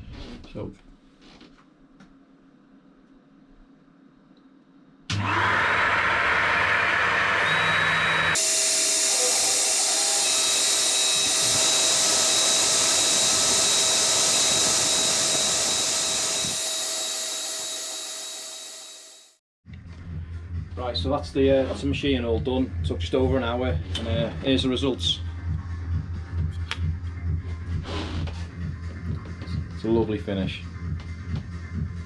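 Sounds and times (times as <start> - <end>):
router spindle whining: 5.1 - 19.4
hissing machining noise: 7.4 - 19.4.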